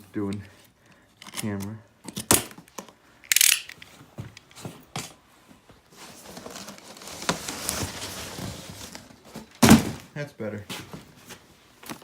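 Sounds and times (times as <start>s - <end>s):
cardboard and packing rustling: 3.8s - 12.0s.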